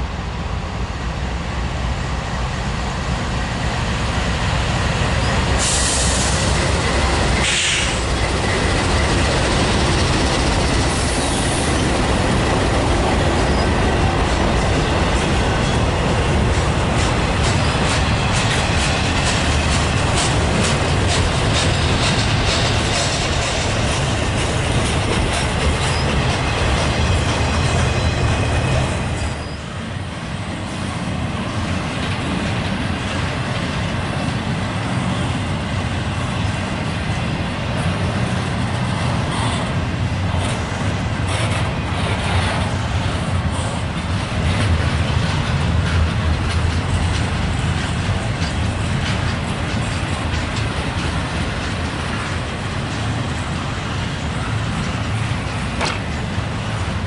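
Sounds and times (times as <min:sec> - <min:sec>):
freight train rumbling and rattling: 0:00.0 - 0:57.0
wheels clicking over rail joints: 0:06.4 - 0:29.6, 0:36.8 - 0:57.0
faint high wheel squeal: 0:27.9 - 0:29.7.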